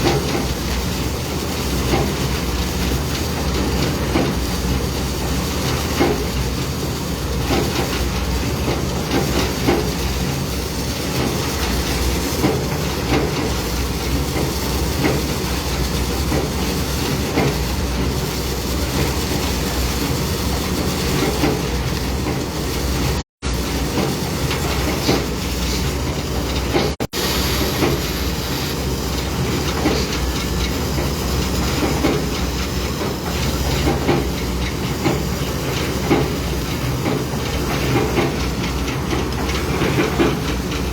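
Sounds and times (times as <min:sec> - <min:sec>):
heavy machinery rattling: 0:00.0 - 0:40.9
hiss: 0:22.9 - 0:40.9.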